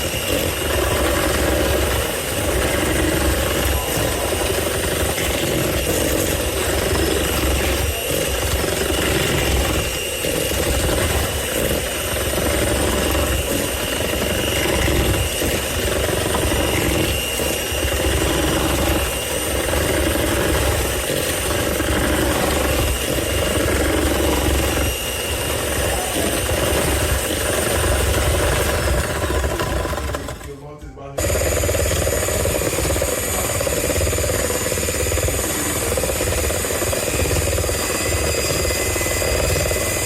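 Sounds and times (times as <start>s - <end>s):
electric mixer whining: 0.0s - 30.6s, 31.2s - 40.0s.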